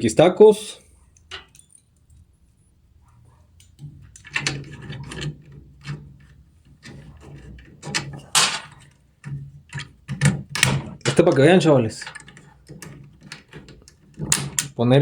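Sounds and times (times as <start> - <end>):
cpu cooler clicking and scraping: 3.5 - 14.8.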